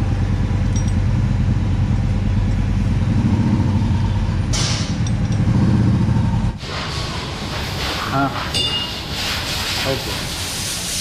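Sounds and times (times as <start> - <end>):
engine humming: 0.0 - 6.6
burst of hiss: 6.6 - 11.0.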